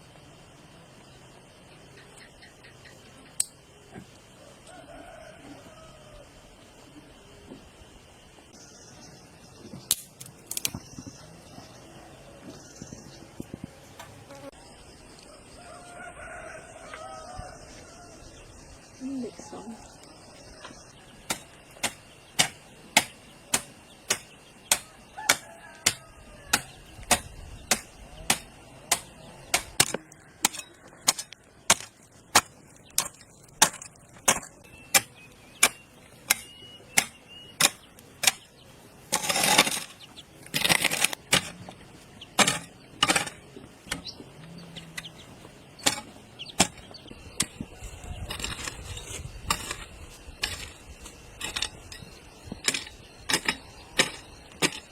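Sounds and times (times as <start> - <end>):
hand tool striking: 21.3 - 38.4, 42.4 - 44.1, 45.8 - 47.7, 48.3 - 54.9.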